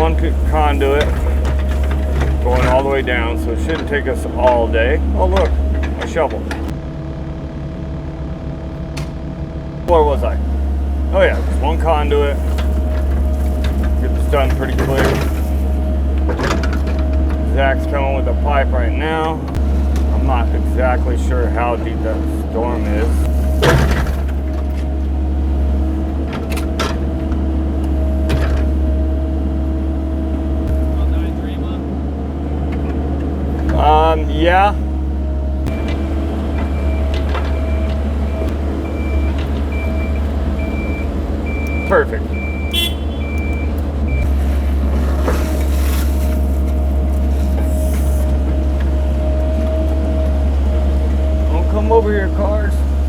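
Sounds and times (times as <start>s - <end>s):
digging scraping noises: 0.0s - 6.8s, 9.9s - 27.2s, 44.0s - 53.0s
steady whine: 0.0s - 42.5s
diesel engine droning: 0.0s - 53.0s
reversing alarm beeps: 35.7s - 44.4s.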